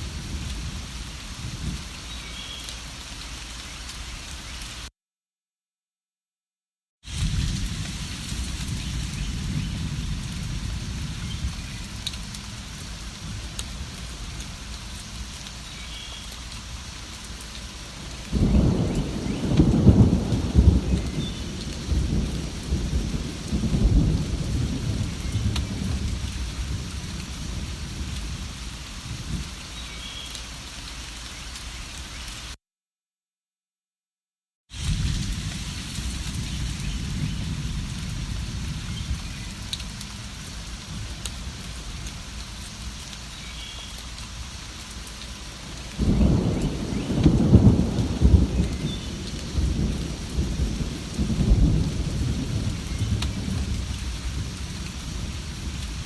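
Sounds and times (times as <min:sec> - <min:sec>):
rain falling: 0:00.0 - 0:04.9, 0:07.1 - 0:32.6, 0:34.7 - 0:56.0
thunder rumble: 0:07.1 - 0:14.6, 0:18.3 - 0:29.6, 0:34.8 - 0:42.5, 0:46.0 - 0:56.0.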